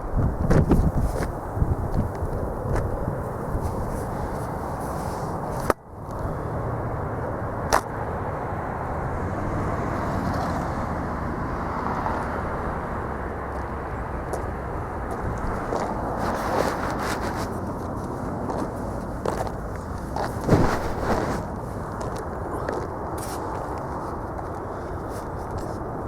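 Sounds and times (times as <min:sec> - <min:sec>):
strong wind on microphone: 0:00.0 - 0:07.4, 0:15.0 - 0:18.9, 0:20.0 - 0:24.4.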